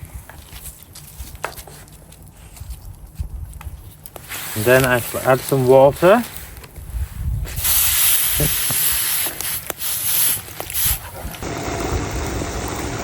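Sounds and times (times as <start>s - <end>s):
water hissing on hot plate: 7.6s - 11.0s.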